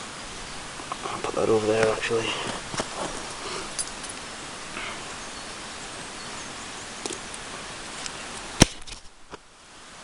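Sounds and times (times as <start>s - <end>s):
background hiss: 0.0s - 10.0s
sharp loud click: 8.6s - 9.1s.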